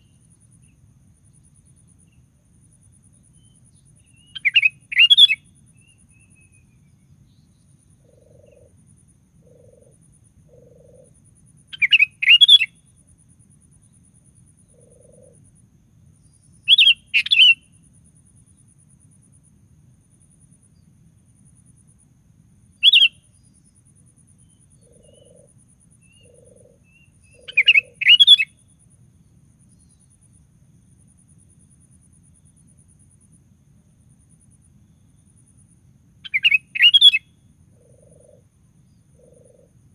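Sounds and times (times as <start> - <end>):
bulbul singing: 26.1 - 28.5.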